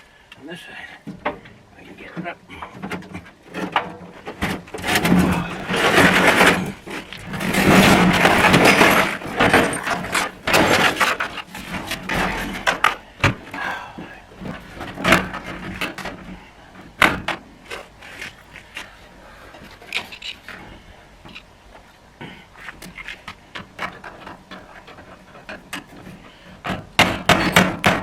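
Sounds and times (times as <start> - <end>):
metal tools clattering in toolbox: 4.8 - 13.7.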